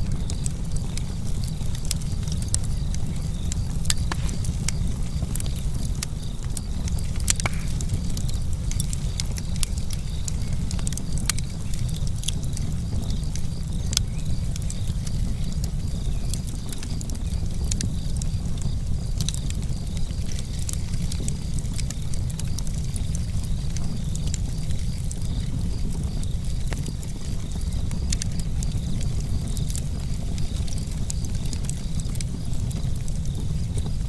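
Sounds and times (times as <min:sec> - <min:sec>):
wood fire crackling: 0:00.0 - 0:34.0
low rumble: 0:03.0 - 0:09.9.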